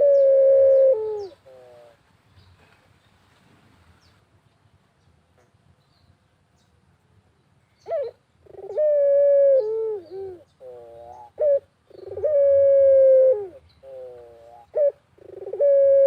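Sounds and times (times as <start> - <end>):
dove cooing: 0.0 - 2.0, 7.8 - 16.0.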